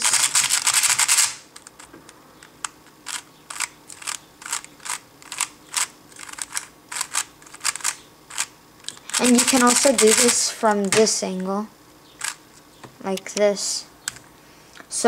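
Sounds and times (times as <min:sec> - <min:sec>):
speed cube clicking turns: 0:00.0 - 0:01.8, 0:02.4 - 0:11.1, 0:12.2 - 0:12.4.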